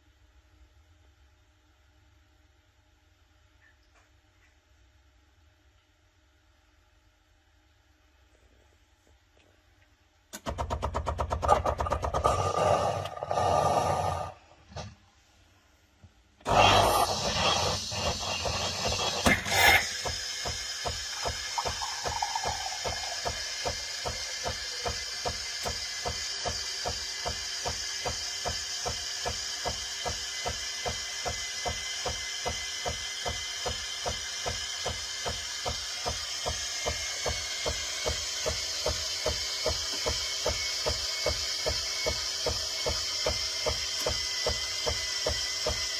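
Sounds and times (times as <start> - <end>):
falling whine: 16.5 - 27.4
coffee machine pump pulsing: 16.5 - 45.9.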